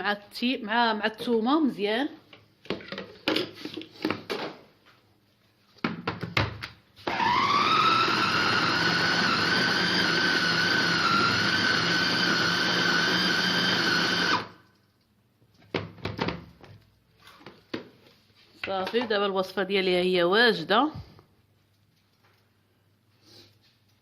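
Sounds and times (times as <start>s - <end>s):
food grinder motor whining: 7.0s - 14.6s.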